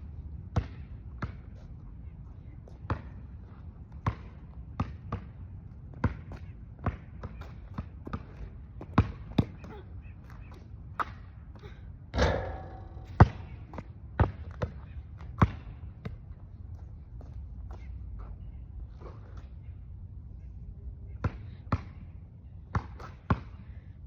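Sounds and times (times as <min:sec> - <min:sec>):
basketball bouncing on hard court: 0:04.0 - 0:05.3, 0:06.8 - 0:09.7, 0:12.2 - 0:13.5
ringing impact: 0:12.2 - 0:13.6.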